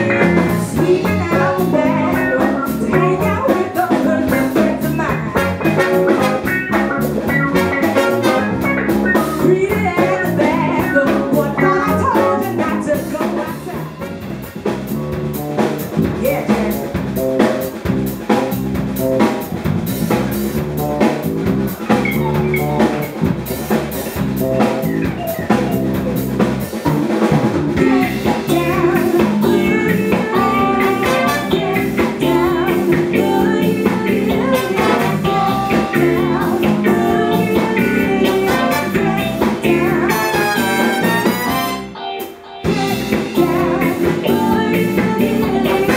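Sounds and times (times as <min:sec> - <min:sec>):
person singing: 0:00.0 - 0:06.5, 0:07.9 - 0:14.2, 0:27.8 - 0:45.9
drum kit: 0:00.0 - 0:45.9
electric bass: 0:00.0 - 0:45.9
electric guitar: 0:00.0 - 0:45.9.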